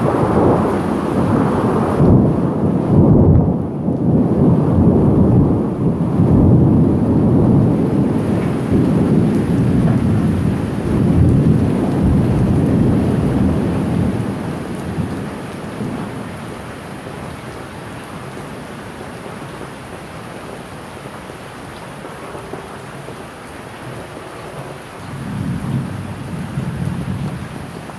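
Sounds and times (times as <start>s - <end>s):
rolling thunder: 0.0s - 16.6s, 25.1s - 27.9s
steady rain: 0.0s - 27.9s.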